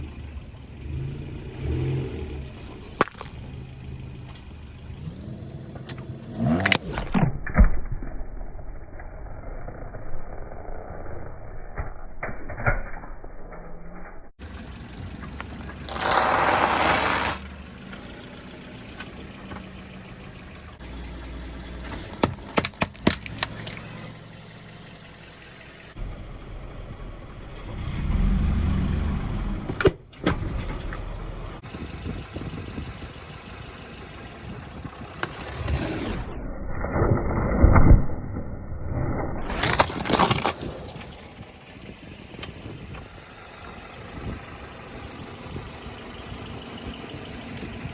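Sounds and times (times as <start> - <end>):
car engine running: 0.0 - 7.1, 14.4 - 27.8, 30.8 - 36.3, 39.7 - 47.9
sharp cracks and crunches: 2.9 - 3.5, 39.2 - 41.4
tyres rolling over objects: 15.6 - 17.5.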